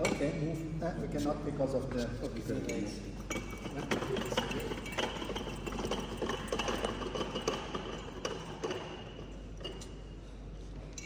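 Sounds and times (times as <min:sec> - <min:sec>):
metal equipment clicking and rattling: 0:03.3 - 0:10.0.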